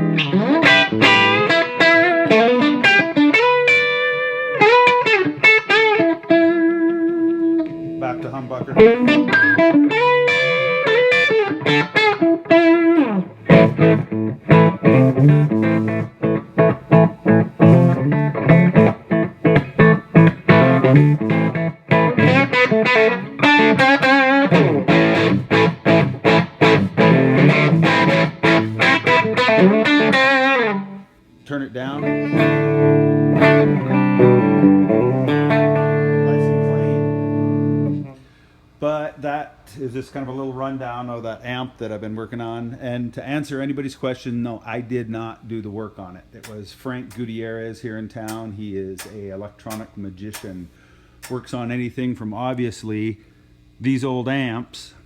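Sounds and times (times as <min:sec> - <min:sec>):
electric guitar lead line: 0:00.0 - 0:31.2, 0:31.8 - 0:38.4.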